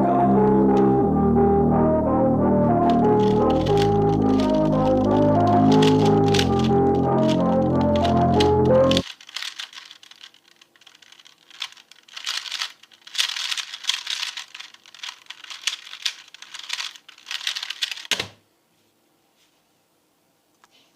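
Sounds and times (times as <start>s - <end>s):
plastic puzzle cube clicking: 2.8s - 18.3s.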